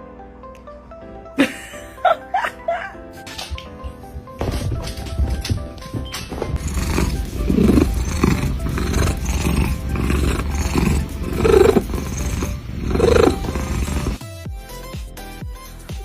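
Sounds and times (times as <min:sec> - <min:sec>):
background music: 0:00.0 - 0:16.0
animal rough calls: 0:06.6 - 0:14.2.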